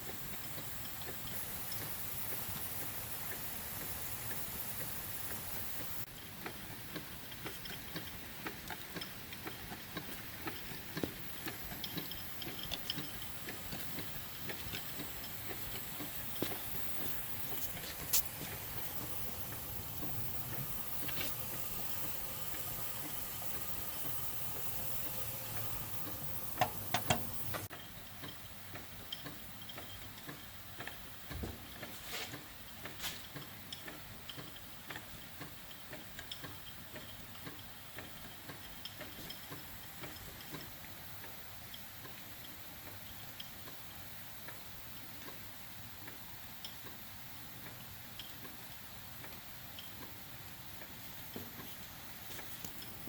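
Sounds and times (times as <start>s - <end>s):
steam boiler hissing: 0.0s - 27.7s
light ticks and clicks: 0.0s - 53.0s.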